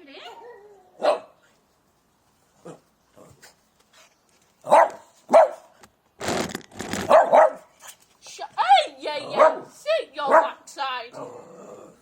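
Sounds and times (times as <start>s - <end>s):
dog barking: 1.0s - 1.4s, 4.7s - 5.7s, 7.1s - 7.7s, 9.3s - 9.7s, 10.3s - 10.6s.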